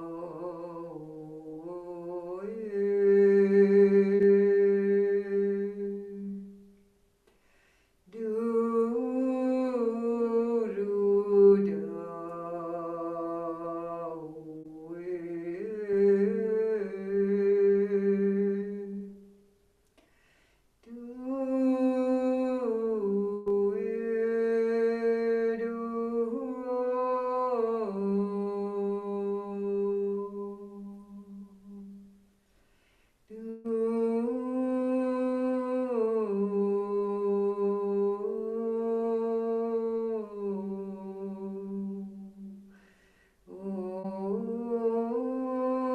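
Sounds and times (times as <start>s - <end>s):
wordless singing in held tones: 8.1s - 19.4s, 20.8s - 32.3s, 33.3s - 42.8s, 43.4s - 45.9s.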